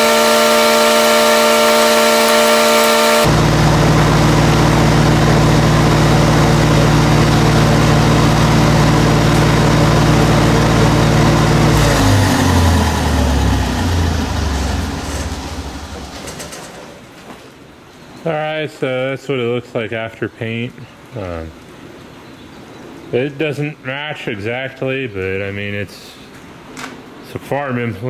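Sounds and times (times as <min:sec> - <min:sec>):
engine running and winding down: 0:00.0 - 0:16.6.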